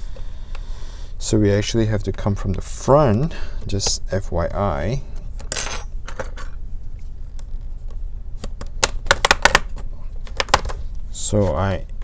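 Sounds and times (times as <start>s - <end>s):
plastic clicks and snaps: 8.4s - 10.8s.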